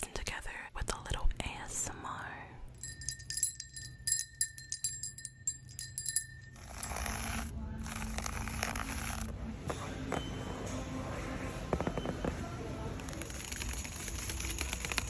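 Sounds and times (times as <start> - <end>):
bell-like ringing tone: 2.8 - 7.5
rapid small clicks: 13.0 - 15.0.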